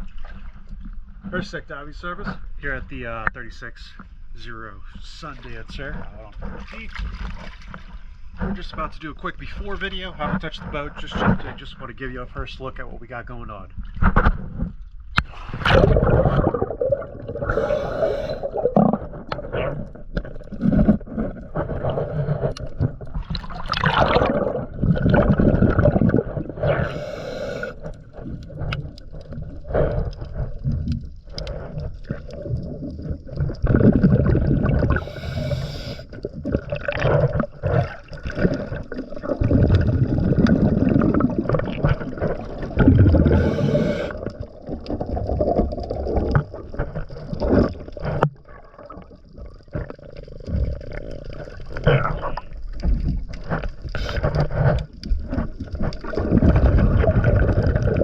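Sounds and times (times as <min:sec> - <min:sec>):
gurgling exhaled bubbles: 0:15.2 - 0:58.0
regulator hissing inhalations: 0:17.5 - 0:18.6, 0:26.8 - 0:27.9, 0:35.0 - 0:36.2, 0:43.2 - 0:44.2.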